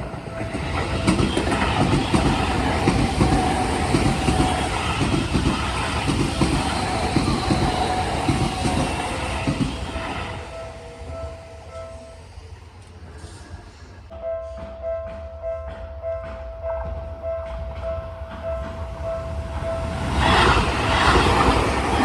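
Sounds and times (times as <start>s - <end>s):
train wheels clattering over joints: 0.0s - 10.5s
crossing warning bell ringing: 0.0s - 13.2s, 14.1s - 22.0s.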